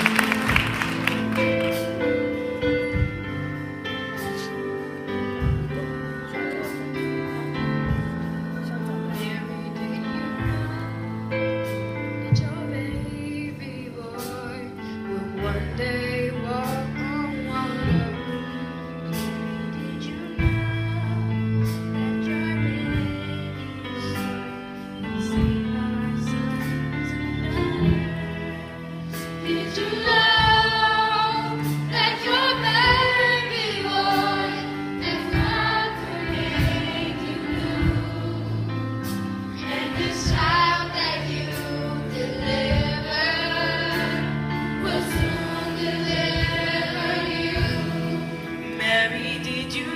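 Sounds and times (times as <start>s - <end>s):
gospel choir singing: 0.0s - 6.0s, 14.2s - 49.9s
steady drum beat: 0.0s - 9.5s, 26.5s - 48.9s.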